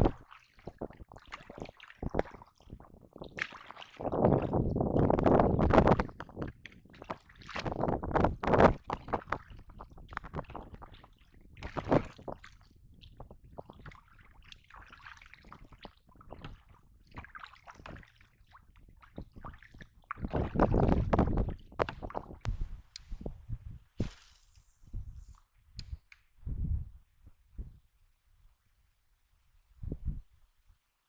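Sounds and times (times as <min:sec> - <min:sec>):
water sloshing and splashing: 0:00.0 - 0:22.6.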